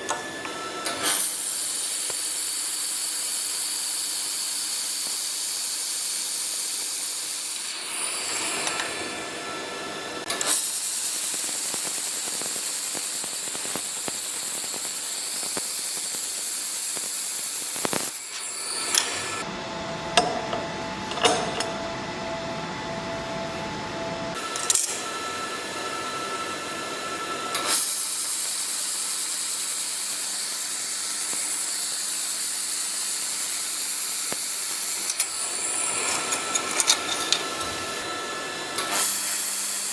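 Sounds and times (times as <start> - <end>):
laser welder hissing: 0.8 - 8.5, 10.2 - 19.4, 27.6 - 39.9.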